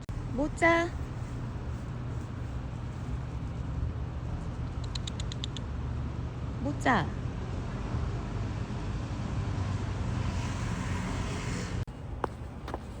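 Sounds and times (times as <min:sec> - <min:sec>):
low vehicle rumble: 0:00.0 - 0:04.8.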